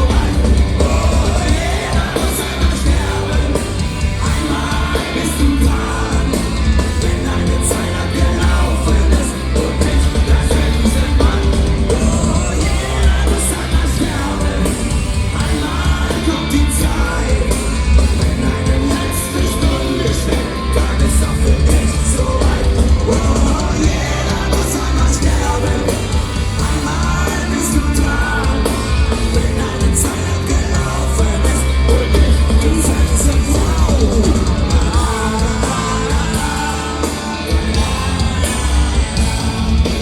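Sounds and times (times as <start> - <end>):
punk rock band playing: 0.0 - 40.0.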